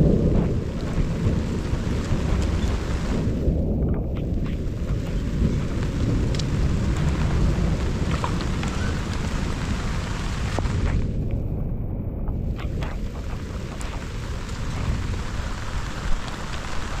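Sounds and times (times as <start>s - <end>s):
sharp raindrop ticks: 0.0s - 11.6s, 12.2s - 17.0s
deep continuous rumble: 0.0s - 17.0s
heavy rain falling: 0.0s - 17.0s.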